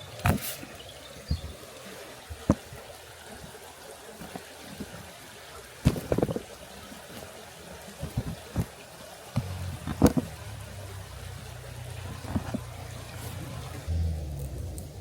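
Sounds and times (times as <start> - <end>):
river water flowing: 0.0 - 15.0
sharp knocks and clicks: 9.4 - 10.4.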